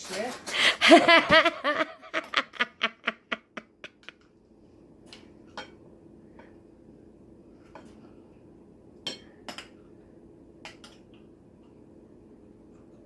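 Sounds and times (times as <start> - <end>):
faint steady hum: 0.3 - 13.0
woman laughing: 0.6 - 4.2.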